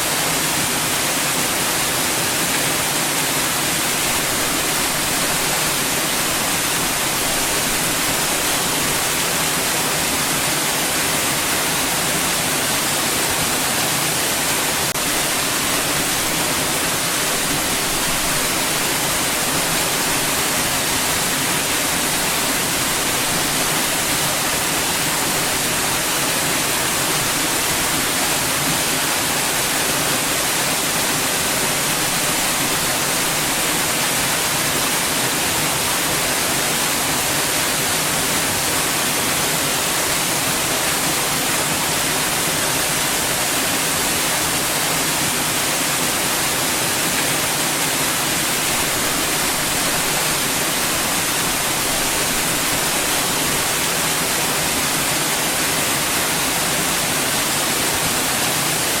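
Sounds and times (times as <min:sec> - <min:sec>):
white noise hiss: 0:00.0 - 0:59.0.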